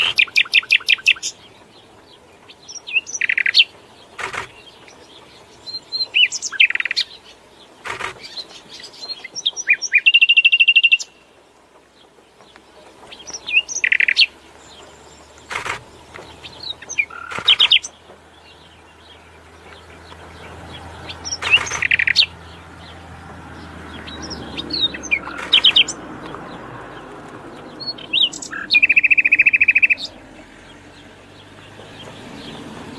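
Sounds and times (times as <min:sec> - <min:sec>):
songbird singing: 0:00.0 - 0:32.9
sharp clicks: 0:04.2 - 0:04.7, 0:07.8 - 0:08.6, 0:15.4 - 0:17.9, 0:21.2 - 0:22.3, 0:25.1 - 0:26.4.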